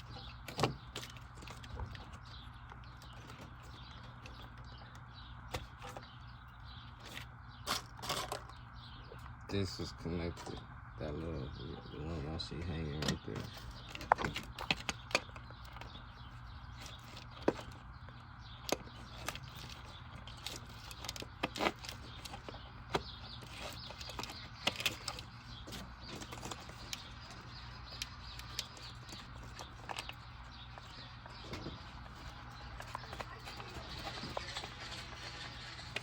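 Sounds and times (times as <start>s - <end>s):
steady low hum: 0.0s - 36.0s
tools clicking on engine parts: 13.0s - 17.9s, 18.5s - 36.0s.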